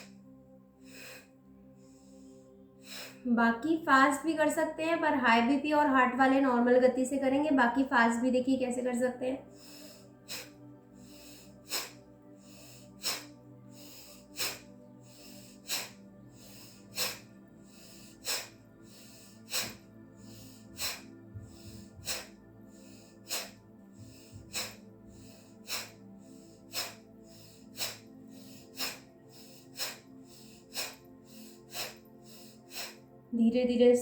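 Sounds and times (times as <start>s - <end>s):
soft background music: 0.0s - 34.0s
woman breathing forcefully: 0.8s - 3.3s, 9.4s - 33.3s.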